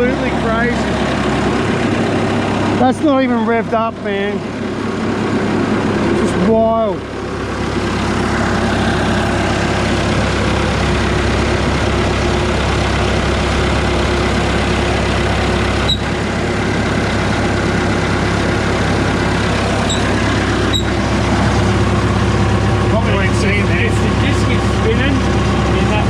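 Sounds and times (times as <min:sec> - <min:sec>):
wood chipper engine running: 0:00.0 - 0:26.0.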